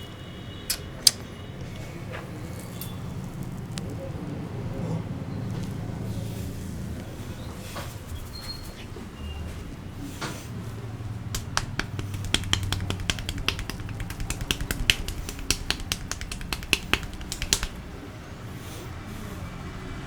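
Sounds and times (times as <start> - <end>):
sharp hand snaps and cracks: 11.4 - 17.8.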